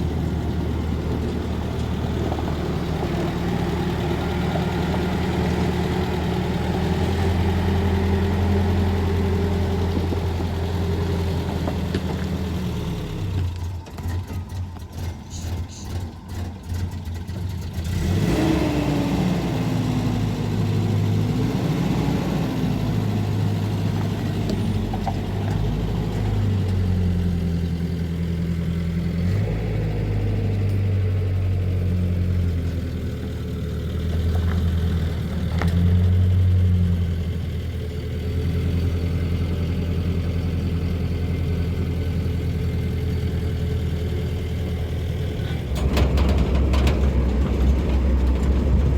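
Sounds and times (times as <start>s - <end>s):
vehicle engine running: 0.0s - 48.9s.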